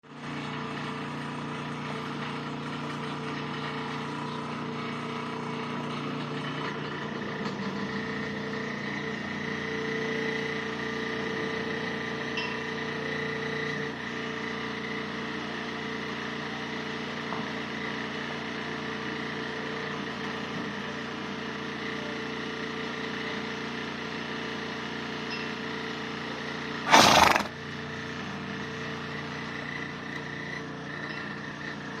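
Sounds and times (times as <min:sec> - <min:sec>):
pet sneezing: 0:26.9 - 0:27.5.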